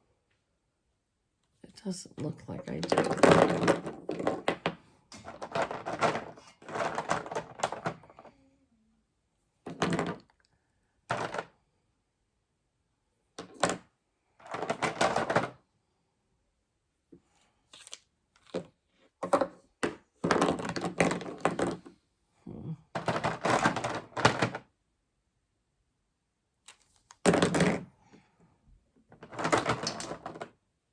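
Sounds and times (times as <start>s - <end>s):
plastic markers clattering: 2.6s - 8.3s, 14.4s - 15.6s, 17.8s - 21.8s, 29.1s - 30.5s.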